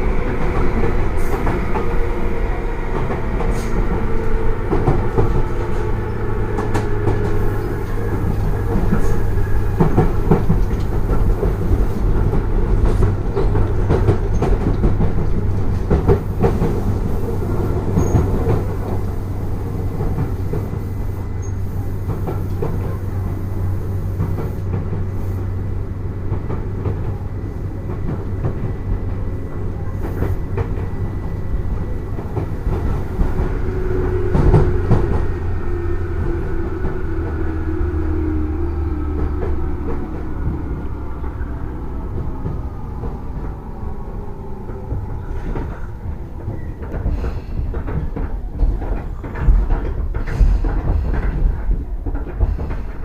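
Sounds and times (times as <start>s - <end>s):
train motor hum: 0.0s - 47.2s
train wheel rumble: 0.0s - 53.0s
rail-joint clacks: 2.8s - 25.4s, 26.2s - 37.8s, 39.0s - 53.0s.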